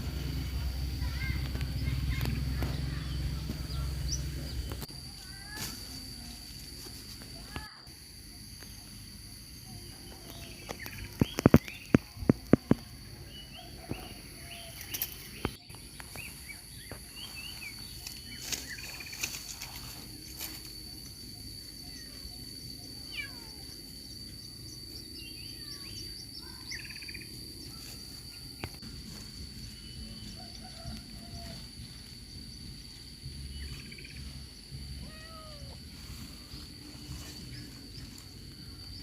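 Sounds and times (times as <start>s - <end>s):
insects droning: 0.0s - 39.0s
small birds chirping: 0.1s - 6.1s, 9.6s - 28.8s.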